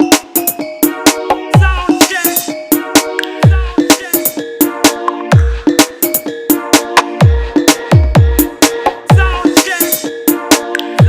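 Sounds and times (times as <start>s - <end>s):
electronic dance music: 0.0s - 11.0s
deep kick drum: 1.6s - 1.9s, 3.4s - 3.8s, 5.3s - 5.7s, 7.2s - 8.5s, 9.1s - 9.4s.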